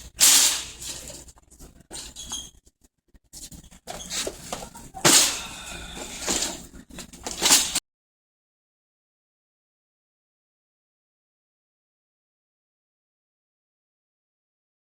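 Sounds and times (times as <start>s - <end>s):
rustling and bumping handling noise: 0.2s - 2.5s, 3.4s - 7.8s.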